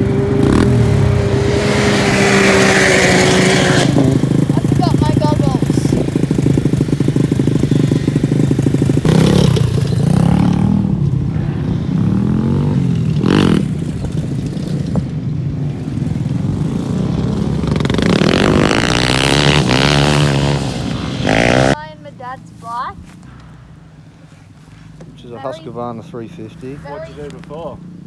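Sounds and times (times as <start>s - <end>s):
dirt bike engine revving: 0.0s - 15.1s, 15.7s - 21.9s.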